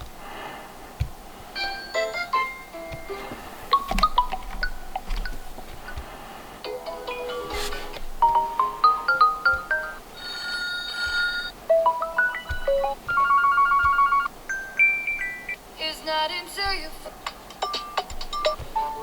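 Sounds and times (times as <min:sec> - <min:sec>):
electronic phone ringtone melody: 0:01.6 - 0:03.2, 0:08.2 - 0:15.6.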